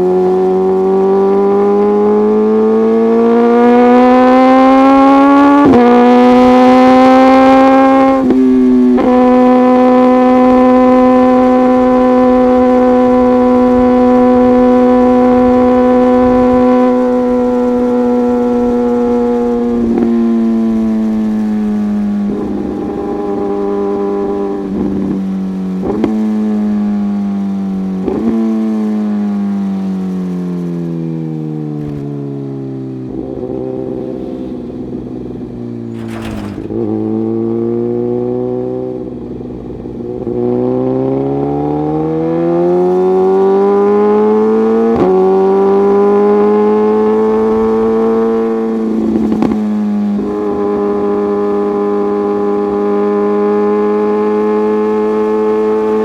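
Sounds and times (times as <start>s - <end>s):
motorcycle engine revving: 0.0s - 56.0s
exhaust pops: 29.5s - 32.6s, 34.0s - 37.4s.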